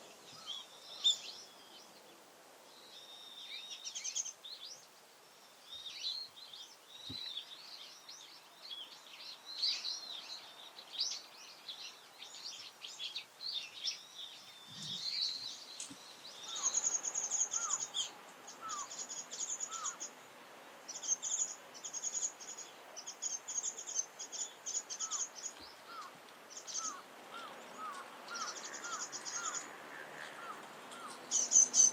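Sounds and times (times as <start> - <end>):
background hiss: 0.0 - 31.9
bird twittering high chirps: 2.8 - 20.2, 20.9 - 31.9.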